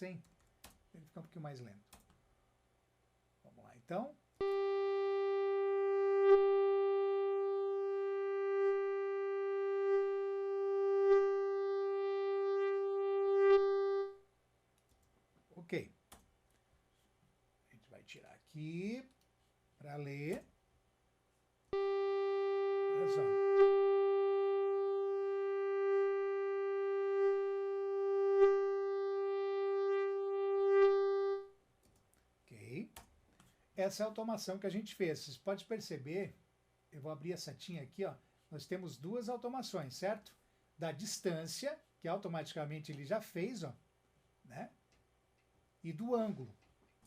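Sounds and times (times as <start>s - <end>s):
synthesized mosquito buzz: 4.4s - 14.2s, 21.8s - 31.5s.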